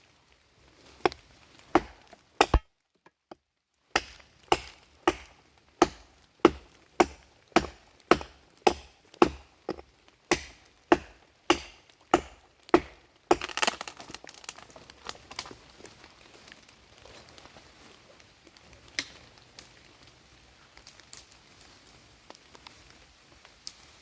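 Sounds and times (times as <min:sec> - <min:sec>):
axe chopping wood: 0:01.0 - 0:02.7, 0:04.0 - 0:14.5.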